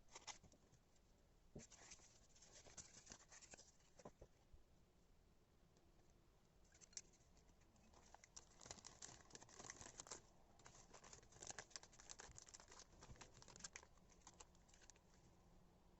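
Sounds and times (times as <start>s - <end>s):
hands handling paper and plastic: 0.0s - 0.6s, 1.6s - 4.3s, 6.7s - 15.2s.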